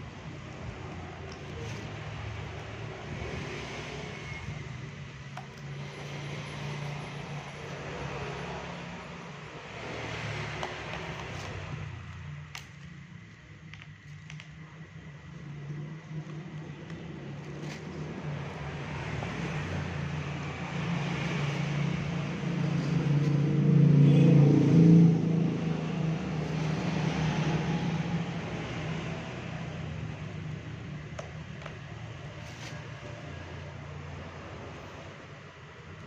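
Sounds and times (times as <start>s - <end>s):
vehicle engine passing by: 0.7s - 12.1s, 17.2s - 30.7s.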